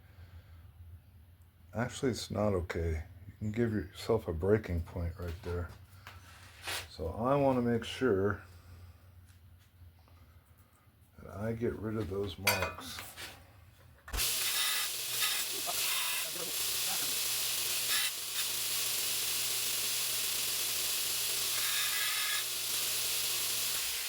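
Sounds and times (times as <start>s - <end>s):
steel grinding hiss: 14.2s - 24.0s.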